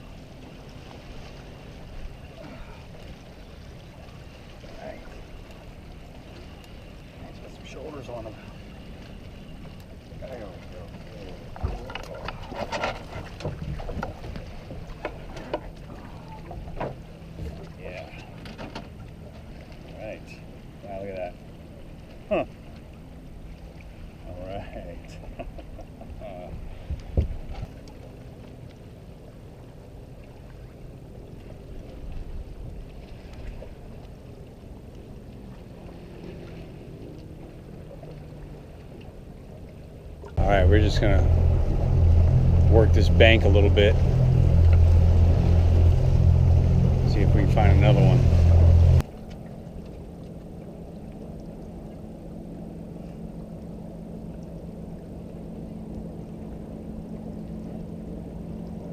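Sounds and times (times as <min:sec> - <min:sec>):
faint ticks and splashes: 0:00.0 - 0:58.9
low rumble of wind and water: 0:00.0 - 0:58.9
knocks and clicks against boat: 0:10.8 - 0:19.4, 0:25.1 - 0:28.8.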